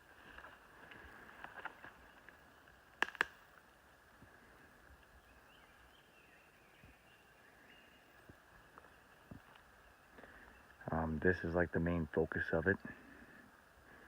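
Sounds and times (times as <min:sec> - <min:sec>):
woodland ambience: 0:00.0 - 0:14.0
sharp clicks: 0:03.0 - 0:03.4
distant bird calls: 0:04.2 - 0:11.5.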